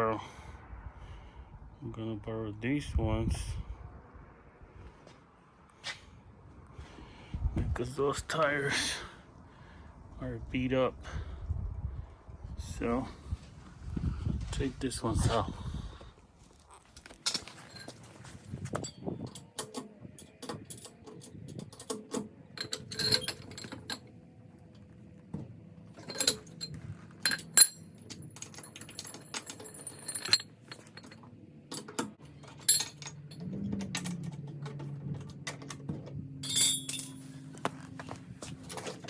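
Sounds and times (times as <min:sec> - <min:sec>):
metal tools and lug nuts clinking: 0:17.1 - 0:24.1, 0:26.0 - 0:35.8, 0:36.4 - 0:38.1
low steady hum: 0:22.4 - 0:34.0, 0:34.6 - 0:39.0.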